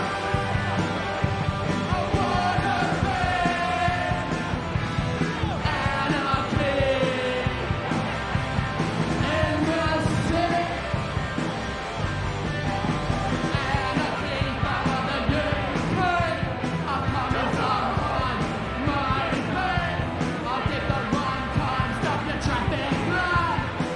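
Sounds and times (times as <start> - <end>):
distorted electric guitars: 0.0 - 23.9
drums: 0.0 - 23.9
punk rock band playing: 0.0 - 23.9
person shouting lead vocals: 1.8 - 4.3.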